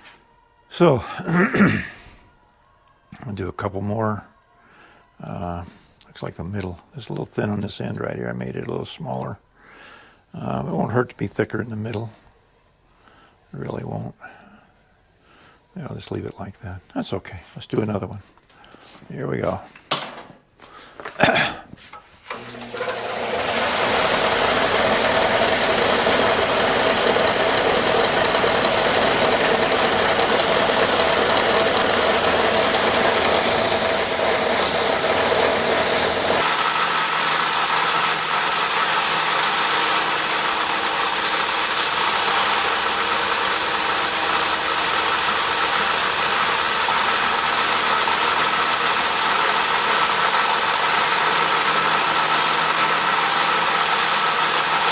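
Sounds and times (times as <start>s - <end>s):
belt sander running: 22.3s - 54.9s.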